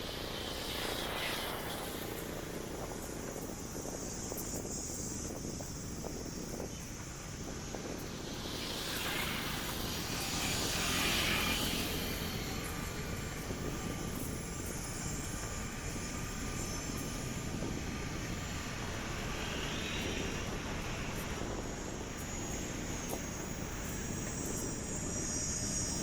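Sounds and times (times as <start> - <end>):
low traffic rumble: 0.0 - 26.0
passing vehicles: 6.6 - 26.0.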